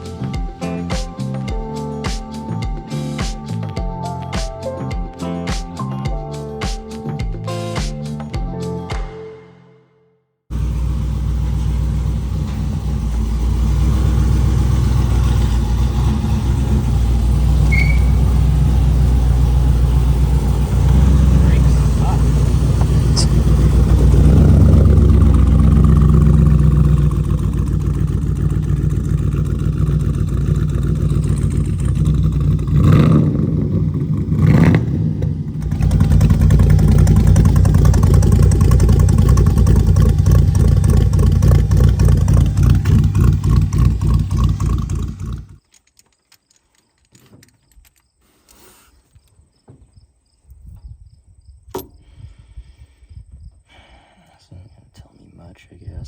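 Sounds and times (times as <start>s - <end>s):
car engine idling with misfire: 10.5s - 34.7s, 35.3s - 45.6s.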